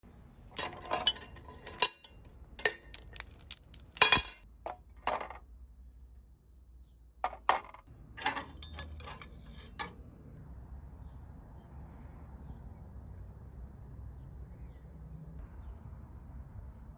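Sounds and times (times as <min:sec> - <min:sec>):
steel shears clinking: 0:00.5 - 0:04.4, 0:07.6 - 0:09.9.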